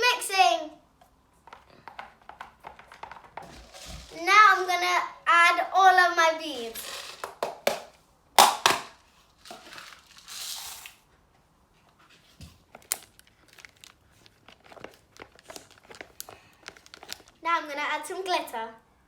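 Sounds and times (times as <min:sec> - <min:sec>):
plastic packet crinkling: 0:03.1 - 0:04.7, 0:08.6 - 0:11.0, 0:12.7 - 0:17.4.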